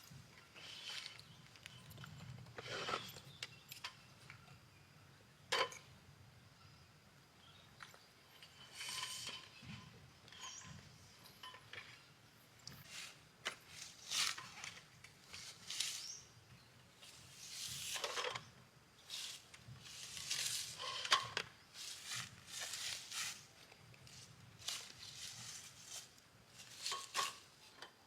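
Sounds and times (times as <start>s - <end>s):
handling rustles and scrapes: 0.0s - 4.1s, 8.0s - 28.0s.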